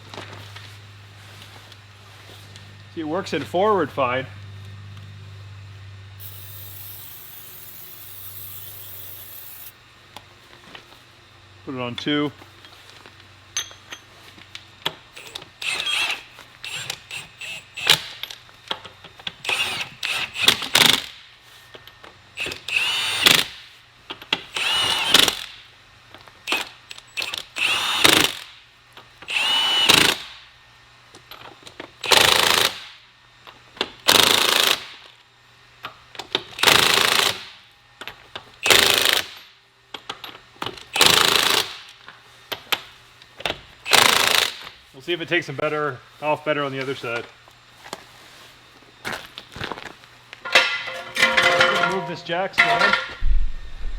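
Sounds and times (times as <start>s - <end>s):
impact wrench hammering: 6.2s - 9.7s, 50.4s - 53.4s.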